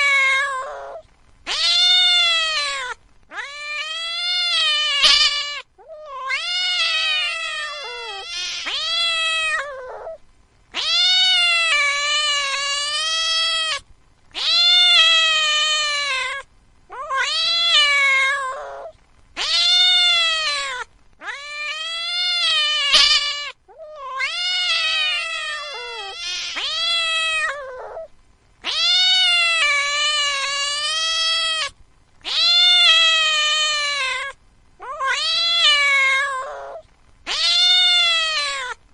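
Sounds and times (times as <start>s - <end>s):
cat yowling: 0.0s - 38.8s.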